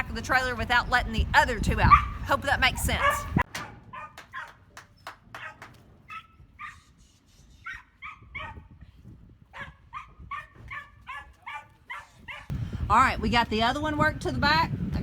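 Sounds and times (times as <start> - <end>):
dog barking: 1.9 - 2.2, 2.9 - 4.6, 5.4 - 6.8, 7.6 - 8.7, 9.5 - 12.5.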